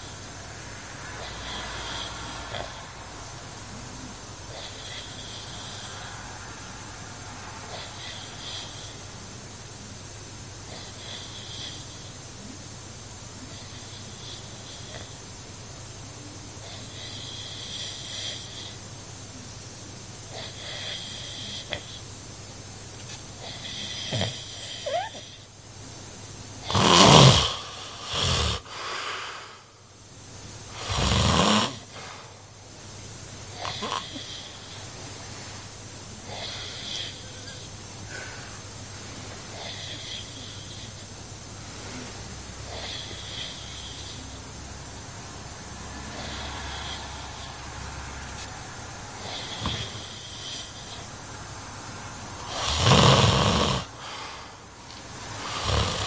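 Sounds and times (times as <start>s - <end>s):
man snoring: 0.0s - 9.2s, 23.4s - 25.4s, 26.6s - 29.7s, 30.7s - 32.3s, 33.5s - 34.9s, 36.1s - 38.4s, 39.5s - 41.1s, 42.6s - 51.4s, 52.4s - 56.0s
steady low hum: 0.0s - 56.0s.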